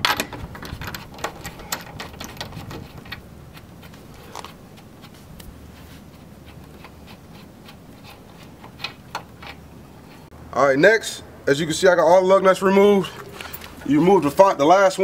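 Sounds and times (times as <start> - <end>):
lug nuts clicking off with socket: 0.0 - 5.5, 6.4 - 10.2.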